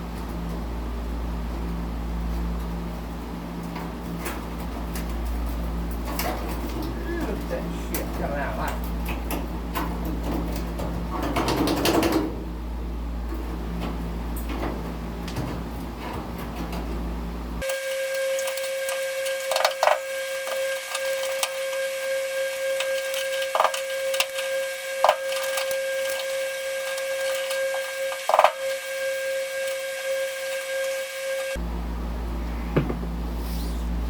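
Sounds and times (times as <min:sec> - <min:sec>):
drill bit squealing on metal: 0:17.6 - 0:31.6.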